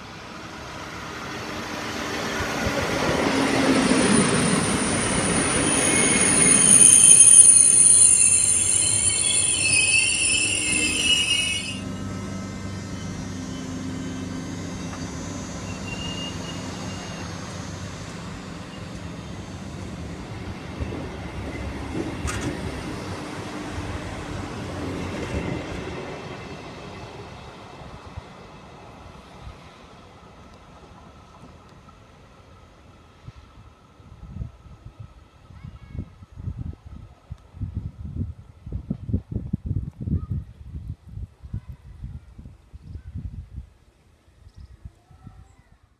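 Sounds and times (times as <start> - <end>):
train rumbling: 0.0 - 39.6
train wheels squealing: 3.9 - 19.8.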